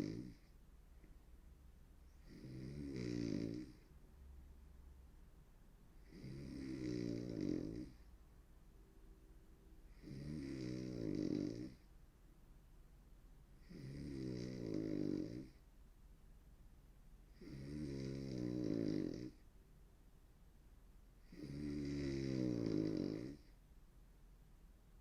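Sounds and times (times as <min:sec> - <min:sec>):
woman snoring with rattle: 0:00.0 - 0:00.5, 0:02.2 - 0:03.8, 0:06.0 - 0:08.1, 0:09.9 - 0:11.8, 0:13.6 - 0:15.6, 0:17.3 - 0:19.4, 0:21.2 - 0:23.5
faint low hum: 0:00.0 - 0:25.0.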